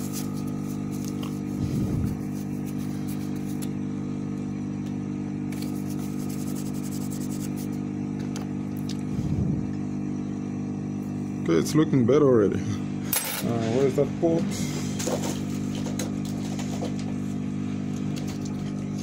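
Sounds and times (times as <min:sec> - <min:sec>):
electric blower motor humming: 0:00.0 - 0:13.1.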